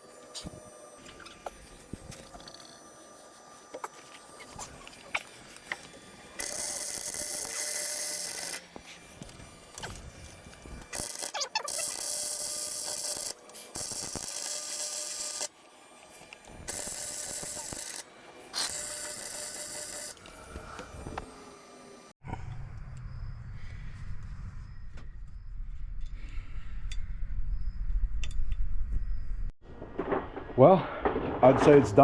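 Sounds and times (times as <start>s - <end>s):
welder arc crackling: 4.4s - 15.6s, 16.2s - 21.3s.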